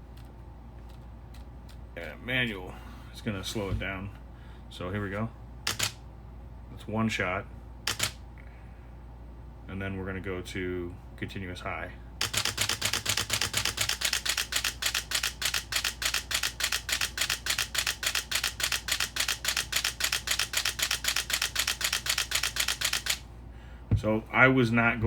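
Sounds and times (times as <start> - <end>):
camera shutter clicks: 5.7 - 6.0, 7.9 - 8.2, 12.2 - 23.2.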